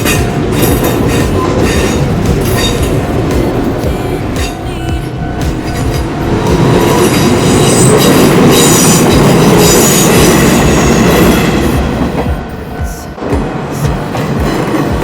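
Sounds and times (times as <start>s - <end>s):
train wheel and rail noise: 0.0s - 15.0s.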